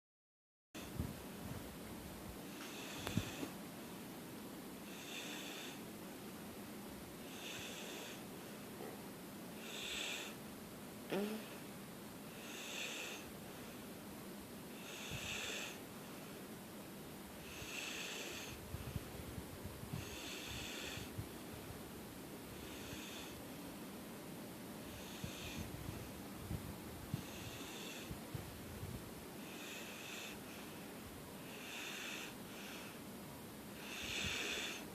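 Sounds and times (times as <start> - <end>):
snoring breaths: 2.5 - 3.6, 4.8 - 5.9, 7.2 - 8.3, 9.6 - 10.4, 11.1 - 11.7, 12.3 - 13.9, 14.7 - 16.4, 17.4 - 19.1, 19.9 - 21.2, 22.5 - 23.5, 24.8 - 26.2, 27.1 - 28.4, 29.4 - 33.0, 33.7 - 34.9.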